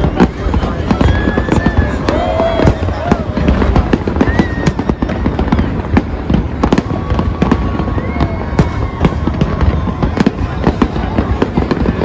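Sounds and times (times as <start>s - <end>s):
firework bangs and crackles: 0.0s - 12.0s.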